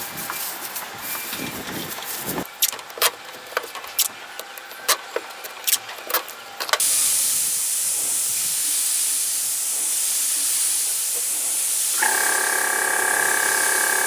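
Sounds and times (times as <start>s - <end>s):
pressurised jet hissing: 6.8s - 14.0s.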